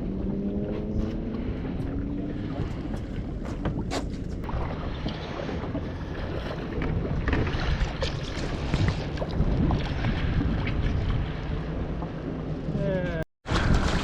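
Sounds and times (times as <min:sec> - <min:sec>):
boat engine humming: 0:00.0 - 0:13.2
wind buffeting microphone: 0:00.0 - 0:14.0.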